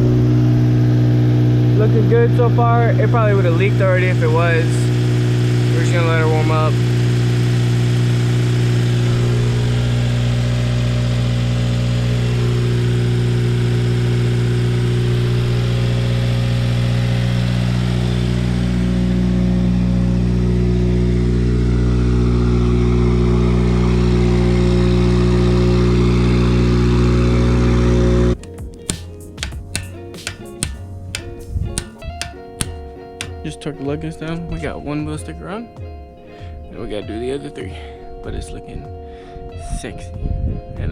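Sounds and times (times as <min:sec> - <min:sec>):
car engine idling: 0:00.0 - 0:27.2.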